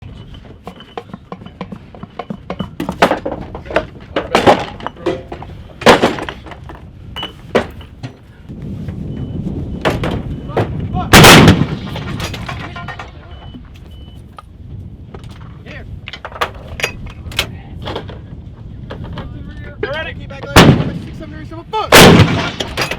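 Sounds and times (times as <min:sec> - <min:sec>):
artillery guns firing: 0:04.2 - 0:04.9, 0:05.8 - 0:06.6, 0:11.1 - 0:13.2, 0:20.5 - 0:21.2, 0:21.9 - 0:22.9.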